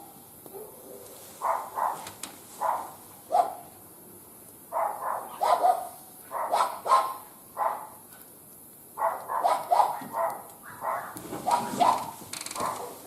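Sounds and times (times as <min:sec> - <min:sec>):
dog barking: 0:00.5 - 0:02.0, 0:02.6 - 0:03.7, 0:04.7 - 0:08.0, 0:09.0 - 0:13.0.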